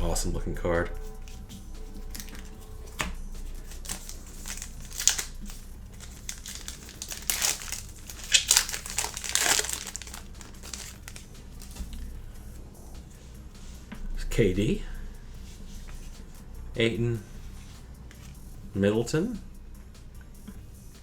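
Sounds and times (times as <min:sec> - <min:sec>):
plastic wrapper crinkling: 0:01.9 - 0:02.7, 0:03.4 - 0:11.9.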